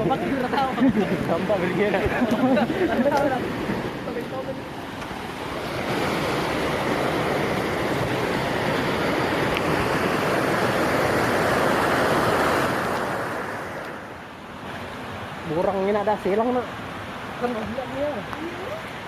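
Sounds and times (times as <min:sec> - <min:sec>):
rushing water: 0:00.0 - 0:19.0.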